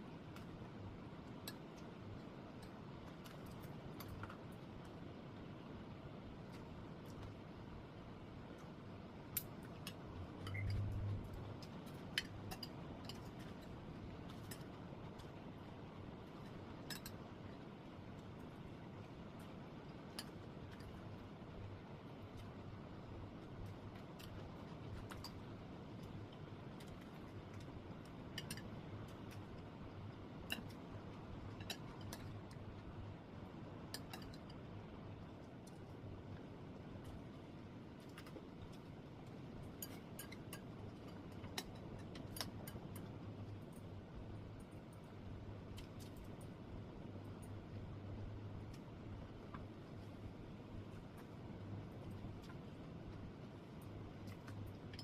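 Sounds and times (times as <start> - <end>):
faint low hum: 0.0 - 55.0
low hum: 10.2 - 11.6
utensils clicking against dishes: 16.9 - 17.2, 28.3 - 28.7, 39.8 - 43.1.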